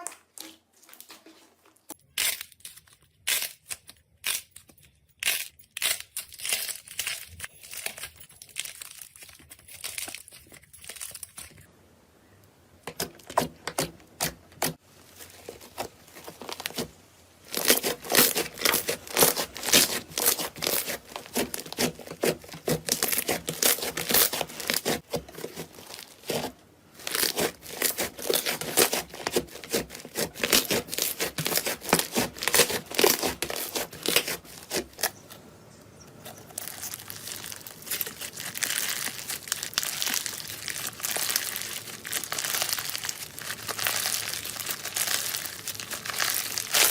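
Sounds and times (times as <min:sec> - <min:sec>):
slime rustling: 0:12.9 - 0:35.2, 0:36.2 - 0:46.9
slime crackling and popping: 0:36.5 - 0:46.9.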